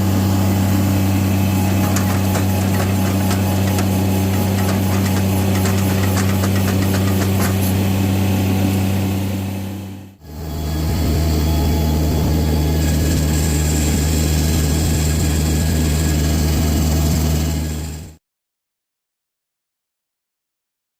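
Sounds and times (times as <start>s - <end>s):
engine humming: 0.0s - 9.7s.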